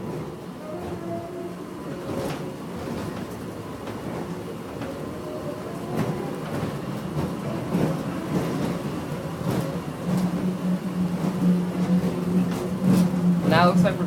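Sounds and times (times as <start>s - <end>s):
train rumble and rattle: 0.0s - 14.0s
low motor hum: 7.2s - 14.0s.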